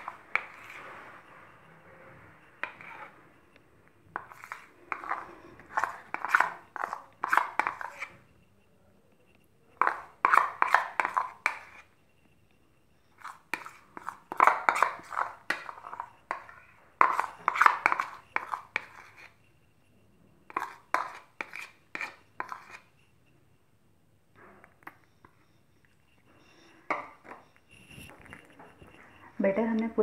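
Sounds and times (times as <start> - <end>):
spoon scraping and tapping bowl: 0.0 - 0.9, 2.6 - 3.2, 4.1 - 8.3, 9.7 - 12.0, 13.1 - 19.4, 20.5 - 23.0, 24.6 - 29.0.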